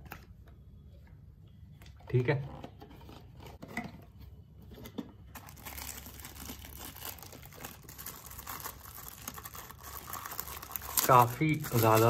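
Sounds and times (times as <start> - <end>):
plastic packaging crinkling: 5.3 - 12.0.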